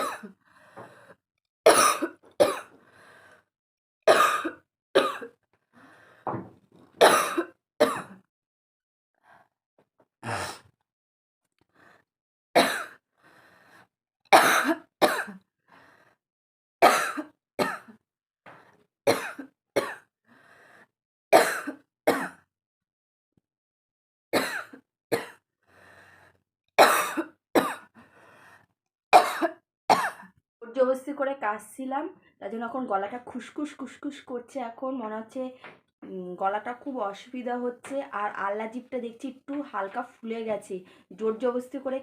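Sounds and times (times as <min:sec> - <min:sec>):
woman coughing: 0:00.0 - 0:00.4, 0:01.7 - 0:02.7, 0:04.1 - 0:05.3, 0:07.0 - 0:08.2, 0:12.6 - 0:13.0, 0:14.4 - 0:15.4, 0:16.8 - 0:18.0, 0:19.1 - 0:20.1, 0:21.4 - 0:22.4, 0:24.4 - 0:25.4, 0:26.8 - 0:27.9, 0:29.2 - 0:30.4.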